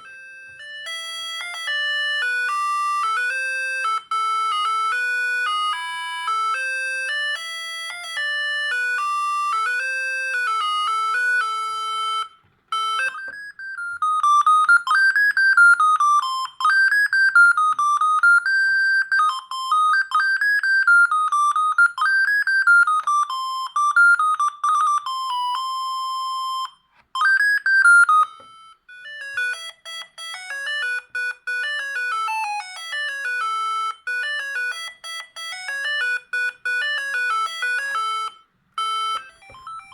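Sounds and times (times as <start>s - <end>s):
mobile phone ringtones: 8.1s - 39.9s.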